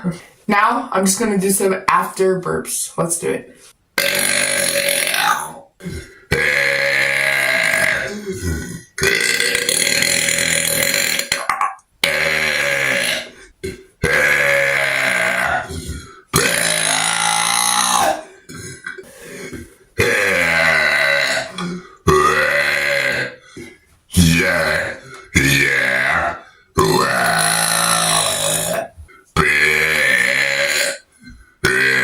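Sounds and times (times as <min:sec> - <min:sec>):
man belching loudly: 0:04.0 - 0:32.0.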